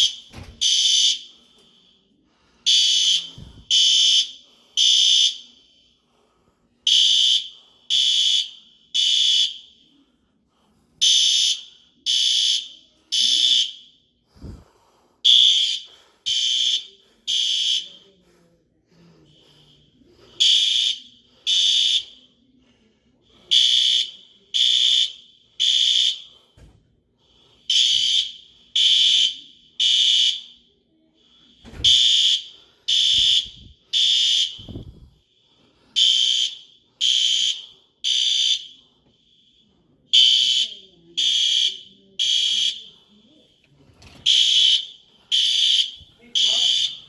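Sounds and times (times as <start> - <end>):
fire alarm beeping: 0.0 - 1.6, 2.6 - 5.9, 6.8 - 10.0, 11.0 - 14.6, 15.2 - 18.2, 19.3 - 22.4, 23.4 - 26.7, 27.6 - 30.8, 31.6 - 35.1, 35.9 - 39.0, 39.6 - 43.0, 44.1 - 47.0.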